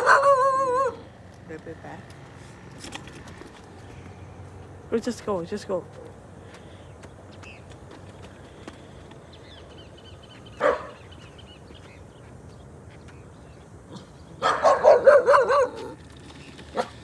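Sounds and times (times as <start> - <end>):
dog barking: 0.0 - 1.0, 10.6 - 11.1, 13.9 - 16.0, 16.8 - 17.0.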